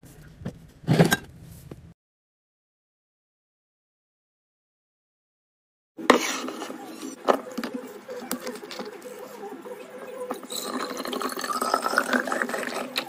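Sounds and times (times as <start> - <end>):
glass and plastic clinking: 10.3 - 13.0.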